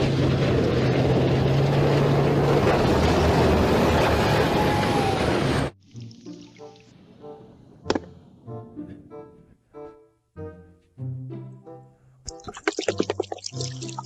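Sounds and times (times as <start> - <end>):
heavy vehicle engine humming: 0.0 - 5.8.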